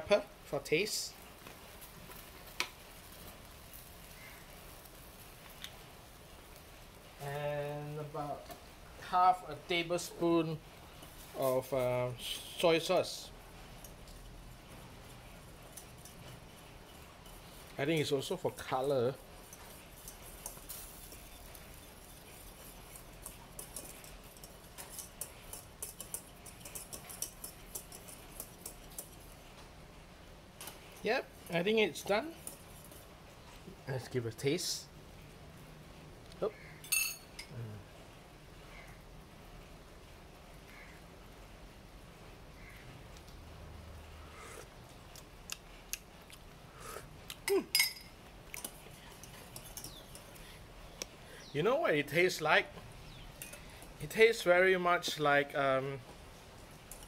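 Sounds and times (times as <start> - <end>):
gravy ticking in a pan: 13.6 - 29.4, 48.6 - 51.5
spoon clinking against pot: 19.4 - 29.2, 36.8 - 37.5, 47.7 - 50.3, 53.4 - 53.7.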